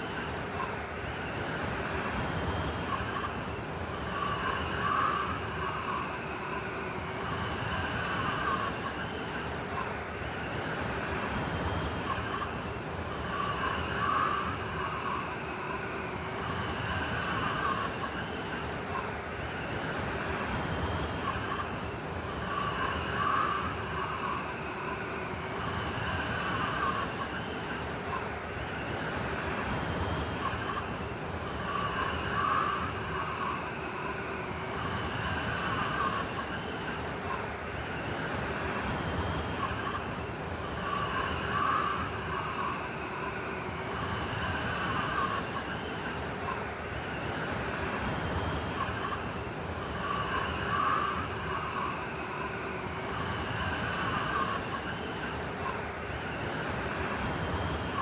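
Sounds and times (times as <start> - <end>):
whistling wind gusts: 0.0 - 58.0
blizzard wind blowing: 21.2 - 58.0.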